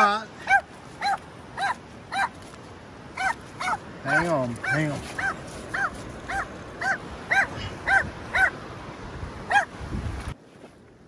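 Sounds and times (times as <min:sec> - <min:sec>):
surf: 0:00.0 - 0:11.0
wind: 0:00.0 - 0:11.0
dog yipping: 0:00.4 - 0:02.4, 0:03.2 - 0:03.8, 0:04.6 - 0:08.6, 0:09.5 - 0:09.7.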